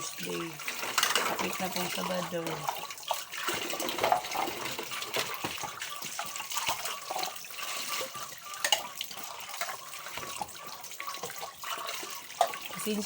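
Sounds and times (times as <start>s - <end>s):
tap water running into sink: 0.0s - 13.0s
dishes clinking and knocking: 0.7s - 2.8s, 3.5s - 6.2s.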